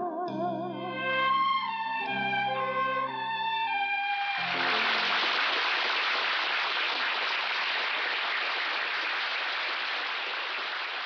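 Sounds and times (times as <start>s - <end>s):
audience applauding: 4.3s - 11.0s.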